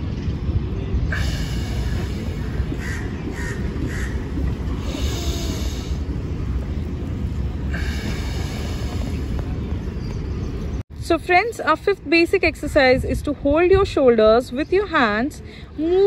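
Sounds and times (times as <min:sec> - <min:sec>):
steady low rumble: 0:00.0 - 0:14.4
crows cawing: 0:02.8 - 0:04.3.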